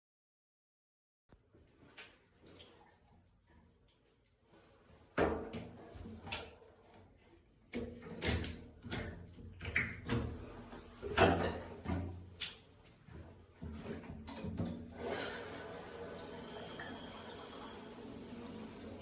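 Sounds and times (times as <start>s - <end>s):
objects knocking and clattering: 7.7s - 12.4s.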